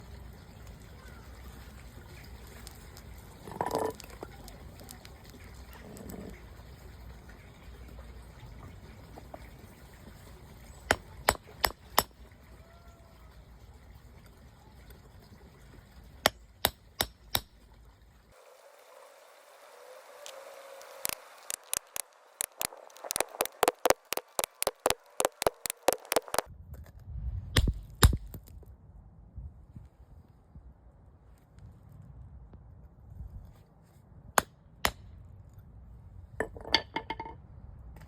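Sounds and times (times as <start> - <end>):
hammer striking chisel into stone: 10.9 - 12.1.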